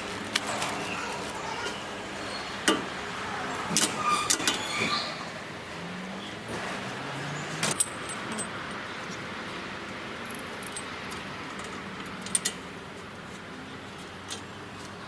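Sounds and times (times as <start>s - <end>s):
steady background noise: 0.0s - 15.0s
metallic clinks and taps: 7.6s - 9.2s.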